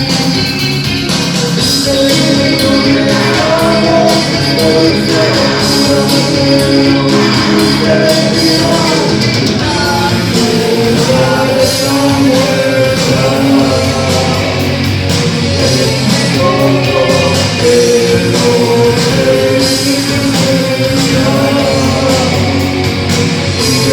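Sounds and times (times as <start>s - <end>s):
person singing: 0.0s - 23.9s
rock band playing: 0.0s - 23.9s.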